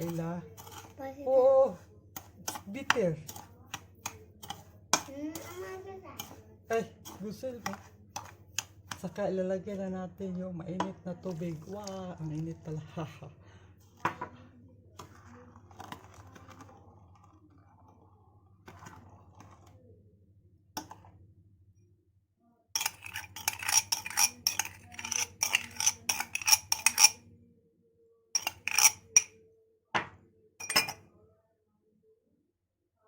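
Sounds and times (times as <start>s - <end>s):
spoon scraping a container: 0.0s - 9.1s, 15.0s - 19.8s, 22.8s - 27.2s, 28.4s - 29.4s, 30.6s - 31.0s
spoon clinking against container: 6.2s - 6.4s, 22.8s - 27.2s, 28.4s - 29.4s, 30.6s - 31.0s.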